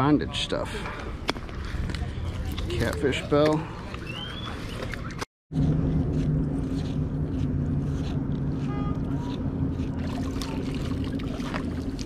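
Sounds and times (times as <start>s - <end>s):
boat engine humming: 5.6s - 12.0s.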